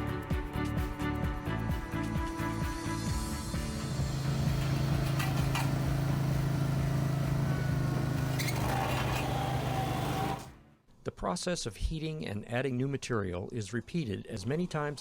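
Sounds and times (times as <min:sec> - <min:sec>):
engine humming steadily: 0:03.4 - 0:10.6.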